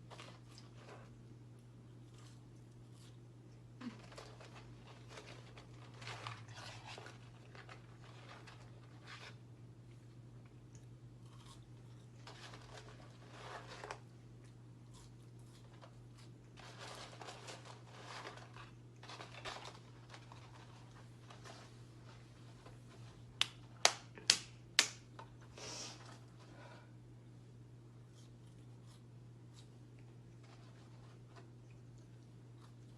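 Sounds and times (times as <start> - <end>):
paper packaging crinkling: 3.8 - 9.5, 12.2 - 14.0, 15.6 - 23.7
chewing: 9.8 - 13.4, 14.0 - 16.6, 28.1 - 32.9.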